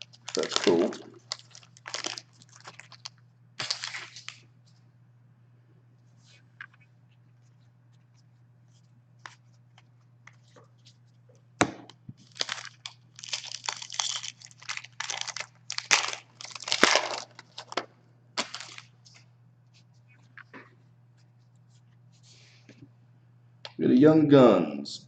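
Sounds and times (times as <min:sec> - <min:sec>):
foil wrapper crinkling: 0:00.0 - 0:04.4, 0:12.2 - 0:19.2
foil wrapper tearing: 0:00.0 - 0:04.4, 0:12.2 - 0:18.9
low electrical hum: 0:00.0 - 0:25.0.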